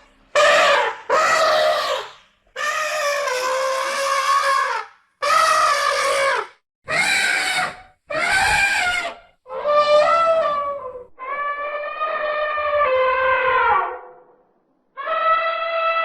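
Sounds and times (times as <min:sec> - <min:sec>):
elephant trumpeting: 0:00.3 - 0:14.2.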